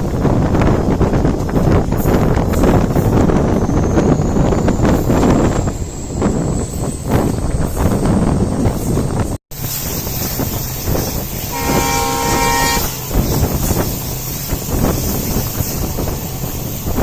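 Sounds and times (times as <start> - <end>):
train rumbling and clattering: 0.0 - 17.0
locomotive horn blast: 11.4 - 13.8.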